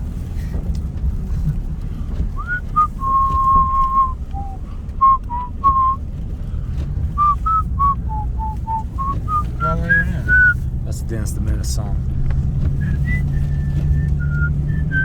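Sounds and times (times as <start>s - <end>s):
low rumble: 0.0s - 15.0s
person whistling a tune: 2.4s - 6.0s, 7.2s - 10.6s, 12.8s - 15.0s.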